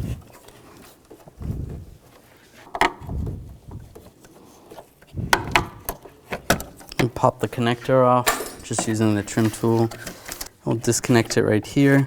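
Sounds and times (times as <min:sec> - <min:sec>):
low handling bumps: 0:03.0 - 0:04.0.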